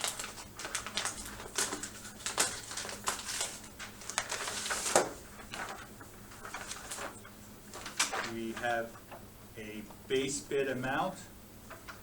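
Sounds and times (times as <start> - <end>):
paper rustling and crackling: 0.0 - 9.2.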